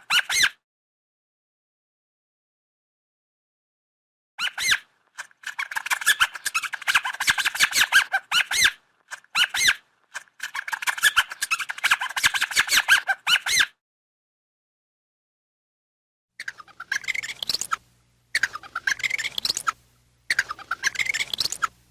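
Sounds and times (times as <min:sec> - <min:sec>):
rodent squeaking and chittering: 0:00.0 - 0:00.6, 0:04.4 - 0:13.8, 0:16.4 - 0:21.8.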